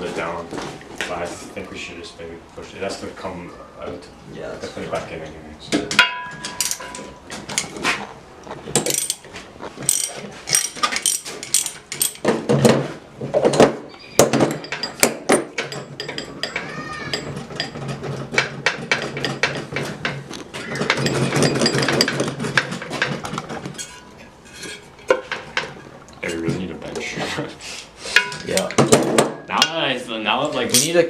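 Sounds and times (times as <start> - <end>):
metallic clinks of tools: 6.0 - 7.0.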